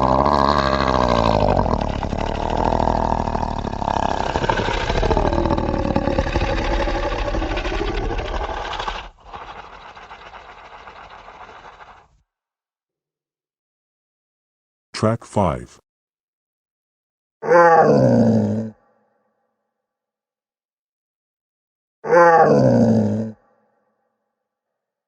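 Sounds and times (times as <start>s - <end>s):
monster growl: 0.0s - 12.0s.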